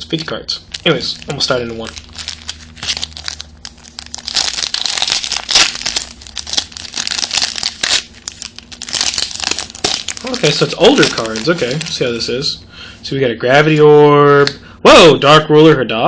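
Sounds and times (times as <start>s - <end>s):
foil wrapper crinkling and tearing: 0.7s - 12.5s.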